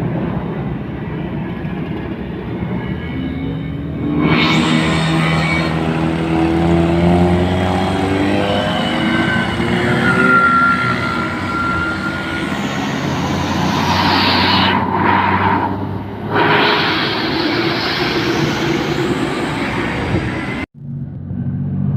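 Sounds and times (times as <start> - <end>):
bus driving by: 0.0 - 21.9
multi-tone air horn: 4.2 - 14.8.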